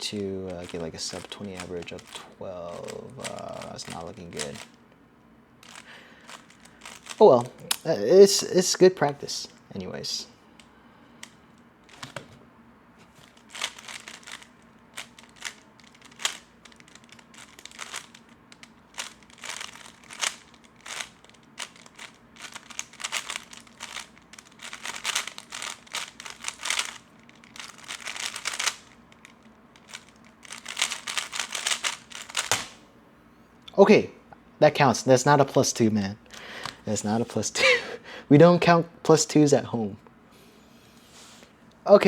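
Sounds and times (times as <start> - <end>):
puzzle cube plastic clicking: 0.5 - 4.8, 5.6 - 8.0, 13.2 - 32.8.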